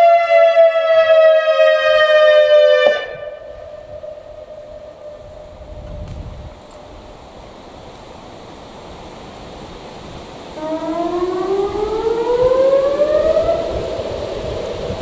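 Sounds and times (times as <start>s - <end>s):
electronic siren rising in pitch: 0.0s - 5.8s, 10.6s - 15.0s.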